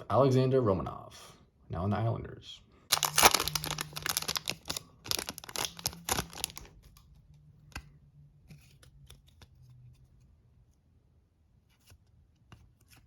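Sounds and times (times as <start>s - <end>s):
trading cards rustling: 2.9s - 7.1s.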